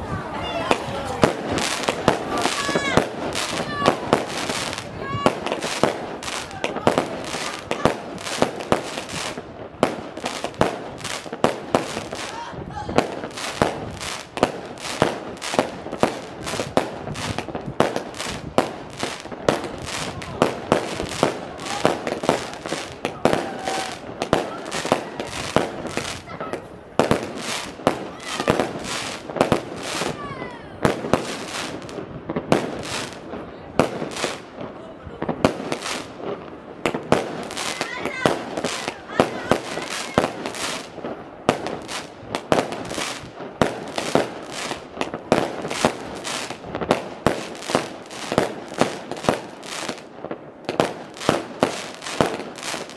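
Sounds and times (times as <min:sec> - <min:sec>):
voices in background: 0:00.0 - 0:09.3, 0:11.9 - 0:13.4, 0:19.8 - 0:31.6, 0:32.9 - 0:41.9
fireworks bangs: 0:00.0 - 0:52.9.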